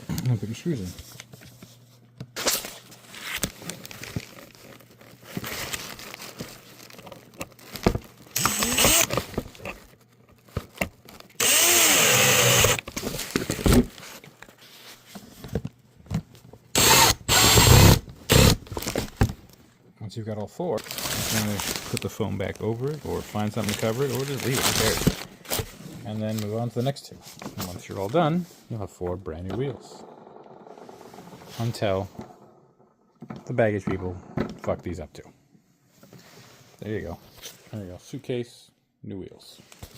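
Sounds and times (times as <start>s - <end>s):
power drill whirring: 8.4s - 9.2s, 11.4s - 12.9s, 16.8s - 18.6s.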